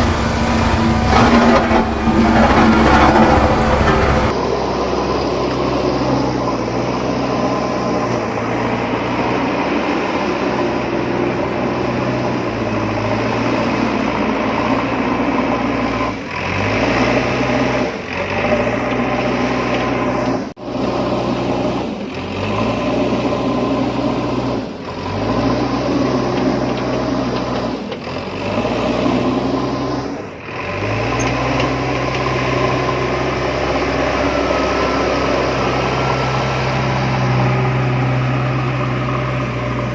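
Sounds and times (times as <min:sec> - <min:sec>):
heavy diesel engine running: 0:00.0 - 0:39.9.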